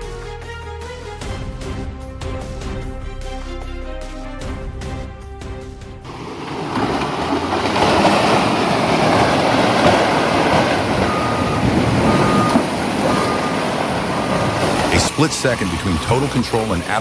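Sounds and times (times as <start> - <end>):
loud rough rumbling: 4.4 - 17.0
vehicle reversing alarm beeping: 10.4 - 17.0.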